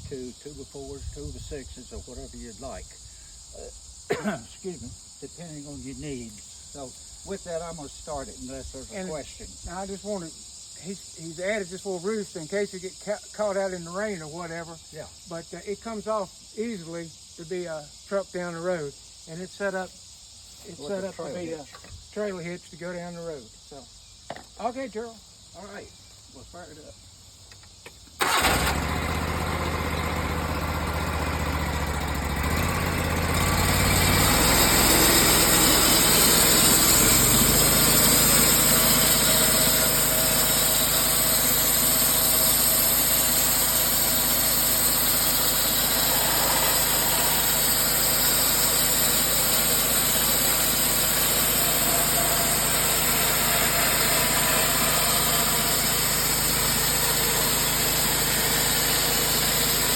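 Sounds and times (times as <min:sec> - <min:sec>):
gas engine running at high speed: 0:28.2 - 0:59.9.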